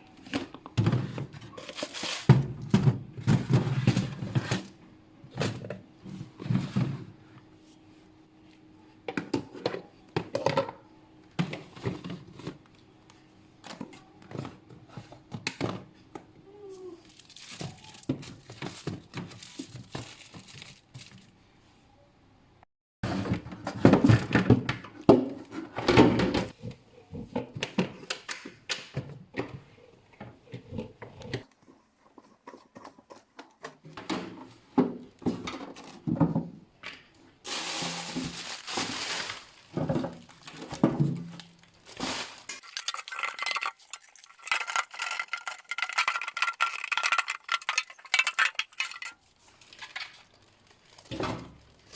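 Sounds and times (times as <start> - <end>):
plastic bags crinkling: 1.6 - 2.3, 17.0 - 21.4, 37.5 - 51.9.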